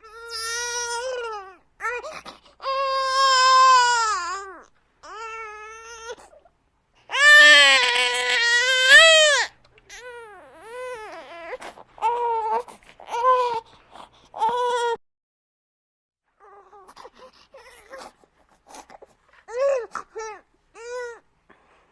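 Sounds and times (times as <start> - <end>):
infant crying: 0.0 - 6.5, 7.1 - 13.7, 14.4 - 15.0, 19.5 - 21.2.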